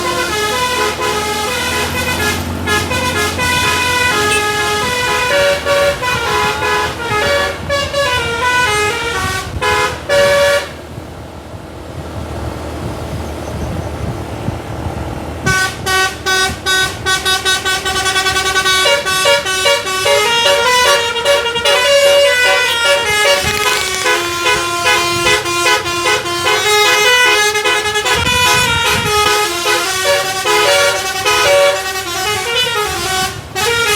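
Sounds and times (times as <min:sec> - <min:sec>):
musical air horn tune: 0:00.0 - 0:10.6
bus engine running: 0:00.0 - 0:33.9.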